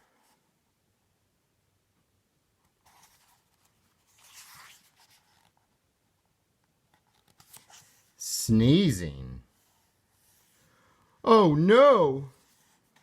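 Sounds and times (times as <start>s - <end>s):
book page turning: 2.7s - 5.7s, 6.9s - 8.2s.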